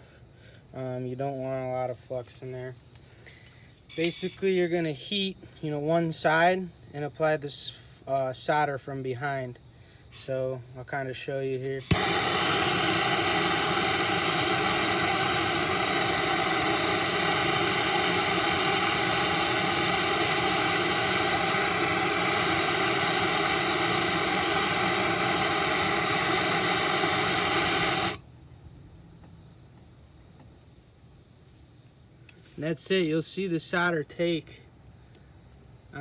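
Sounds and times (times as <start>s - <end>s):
gas torch hissing: 3.9s - 4.5s, 11.7s - 28.2s.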